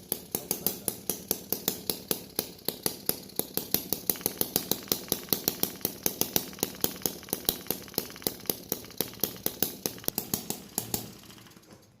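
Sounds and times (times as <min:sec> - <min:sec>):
small engine running: 0:01.4 - 0:12.0
sharp even clicks: 0:03.7 - 0:11.8.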